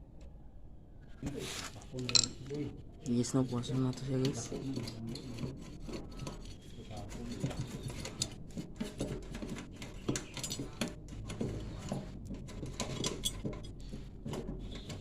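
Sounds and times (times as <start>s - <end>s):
light clicks taps and clinks: 2.0s - 2.6s, 7.4s - 15.0s.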